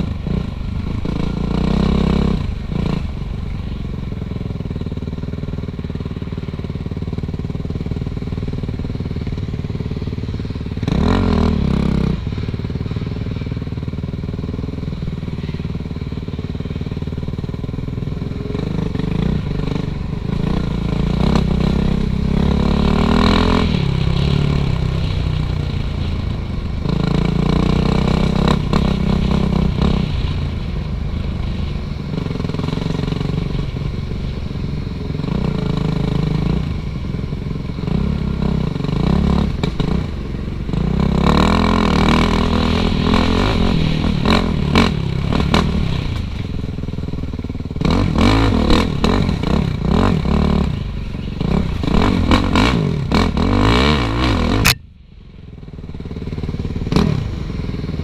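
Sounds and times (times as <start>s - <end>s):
dirt bike engine revving: 10.8s - 12.3s, 18.0s - 26.0s, 37.8s - 46.2s, 47.7s - 54.8s.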